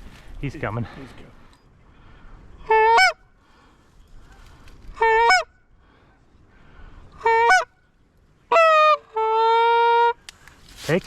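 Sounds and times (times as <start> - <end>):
goose call honking: 5.0 - 5.5, 7.2 - 7.7, 8.5 - 10.2.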